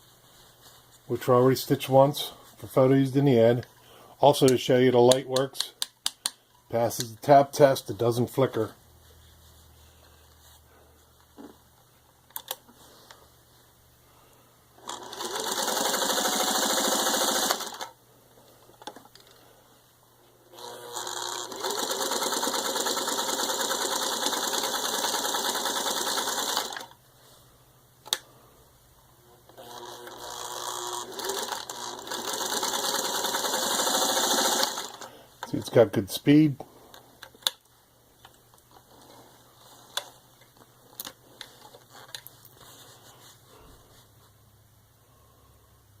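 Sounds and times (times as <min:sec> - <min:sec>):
sewing machine stitching: 0:14.8 - 0:17.9, 0:20.6 - 0:26.9, 0:29.5 - 0:35.1.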